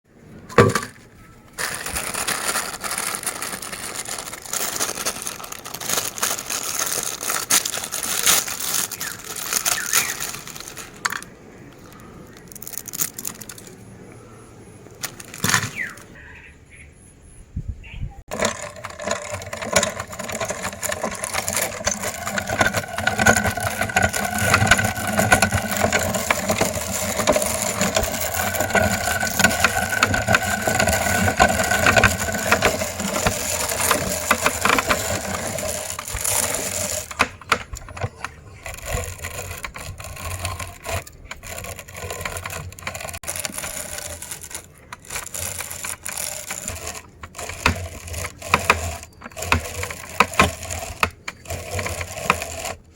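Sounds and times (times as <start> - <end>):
grinder crunching noodles: 1.5 - 13.8, 18.3 - 52.9
motor hum: 18.3 - 52.9.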